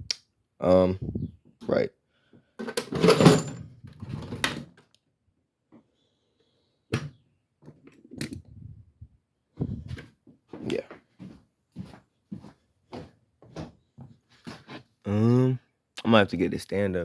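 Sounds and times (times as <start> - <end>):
objects clattering and rattling: 2.6 - 4.8.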